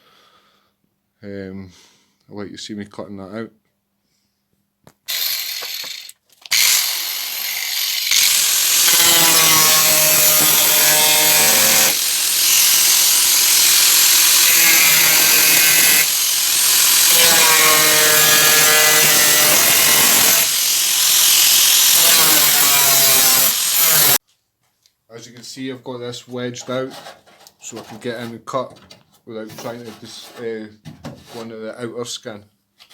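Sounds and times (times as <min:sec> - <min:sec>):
angle grinder cutting sheet steel: 0:05.1 - 0:24.2.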